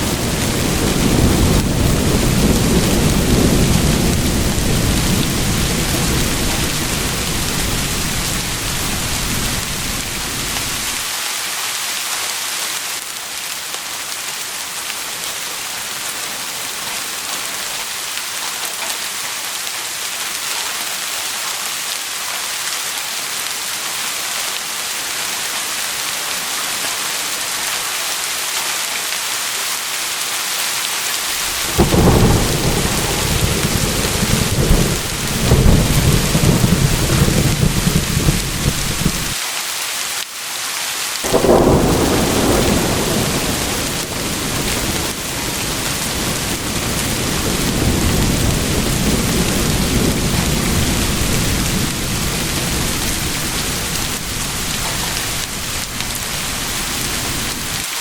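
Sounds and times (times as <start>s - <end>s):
thunder rumbling: 0.0s - 11.1s, 31.2s - 39.4s, 41.2s - 57.8s
steady rain hissing: 0.0s - 58.0s.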